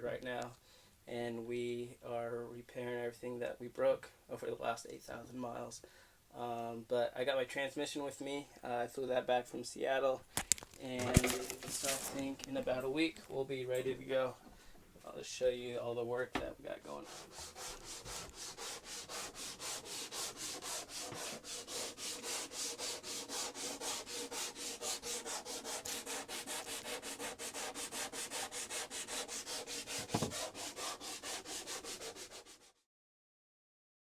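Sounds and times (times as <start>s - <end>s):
sandpaper rubbing by hand: 11.2s - 12.3s, 16.9s - 32.8s
dull thump: 30.0s - 30.4s.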